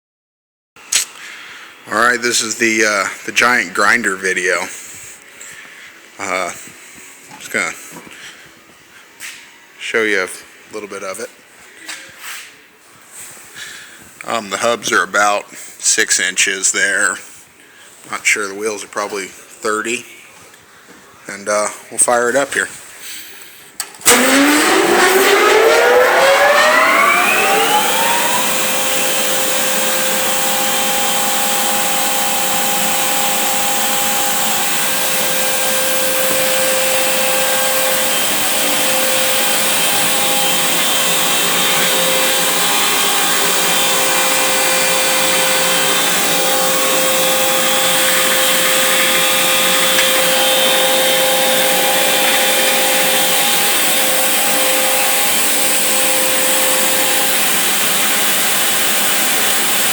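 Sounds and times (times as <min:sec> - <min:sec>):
grinder whining: 0:24.0 - 0:59.9.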